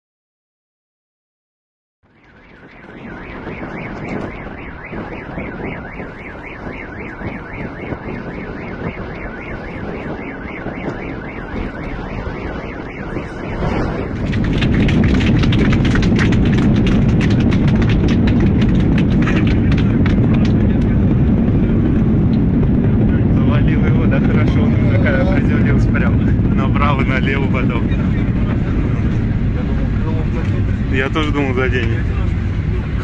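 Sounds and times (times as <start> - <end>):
car alarm warbling: 2.1 - 15.0
rushing noise: 2.1 - 33.0.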